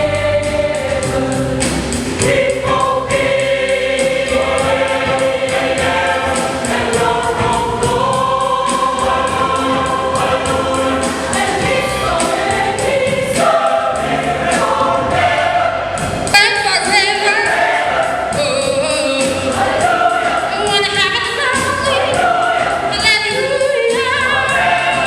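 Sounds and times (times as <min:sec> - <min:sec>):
choir singing gospel: 0:00.0 - 0:25.0
steady beat of short strokes: 0:00.1 - 0:16.4.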